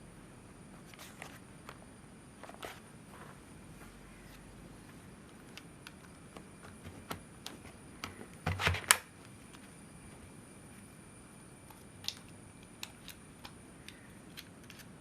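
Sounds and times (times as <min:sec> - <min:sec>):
laptop parts clicking and tapping: 0:05.2 - 0:09.7, 0:11.6 - 0:15.0.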